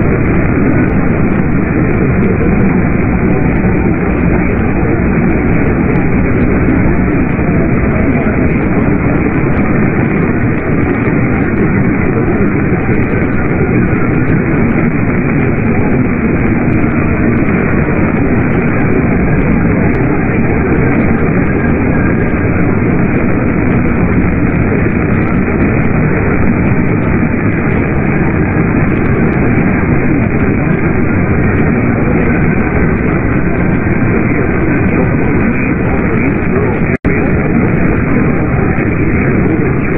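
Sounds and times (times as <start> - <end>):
radio static: 0.0 - 39.9.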